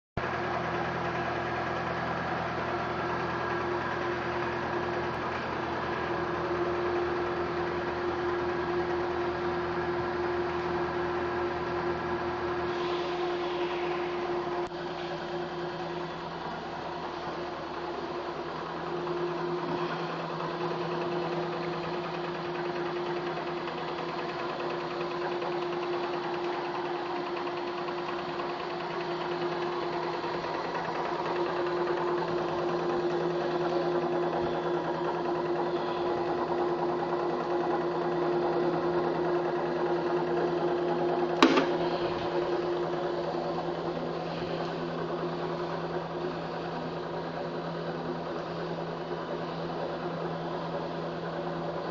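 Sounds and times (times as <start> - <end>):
electric motor whine: 0.4 - 51.9
sharp click: 41.4 - 42.0.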